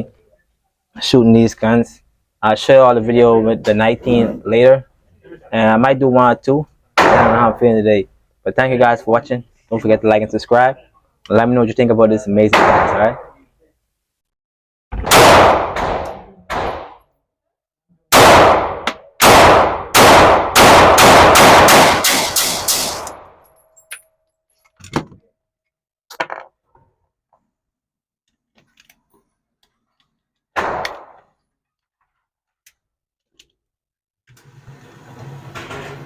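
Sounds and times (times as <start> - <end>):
gunshots echoing indoors: 7.0 - 7.6, 12.5 - 13.3, 15.0 - 17.0, 18.1 - 23.3.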